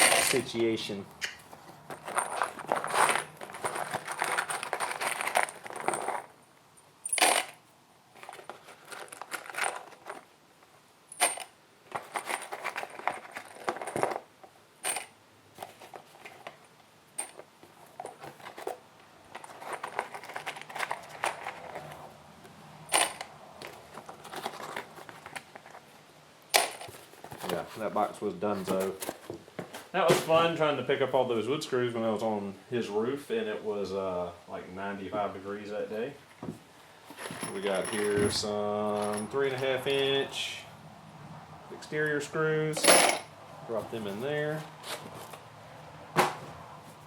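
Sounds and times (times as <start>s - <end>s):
nails rattling into plastic bin: 0.0s - 0.5s, 1.9s - 6.3s, 19.4s - 22.0s, 22.9s - 25.4s, 26.5s - 27.6s.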